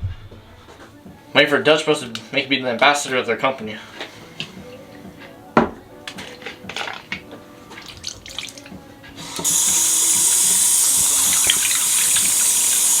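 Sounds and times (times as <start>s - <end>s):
tap water running into sink: 9.4s - 13.0s.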